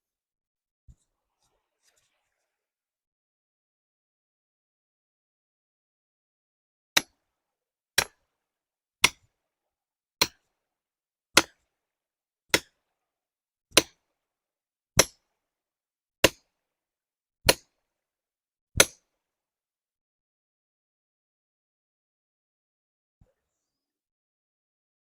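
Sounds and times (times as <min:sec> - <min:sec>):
hammer striking wedge: 0:08.0 - 0:08.2, 0:09.0 - 0:09.2, 0:10.2 - 0:10.4, 0:11.4 - 0:11.6, 0:12.5 - 0:12.7, 0:13.8 - 0:14.0, 0:15.0 - 0:15.2, 0:16.2 - 0:16.4.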